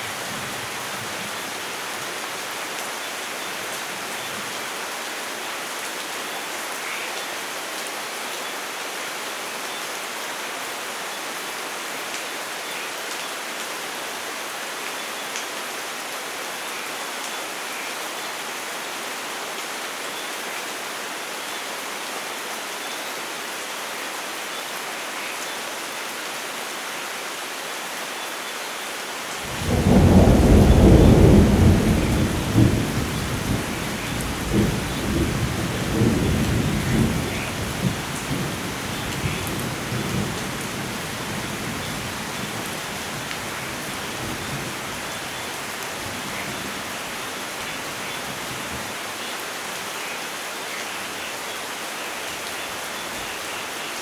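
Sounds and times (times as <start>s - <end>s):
steady rainfall: 0.0s - 54.0s
thunder clap and rumbles: 29.5s - 38.5s.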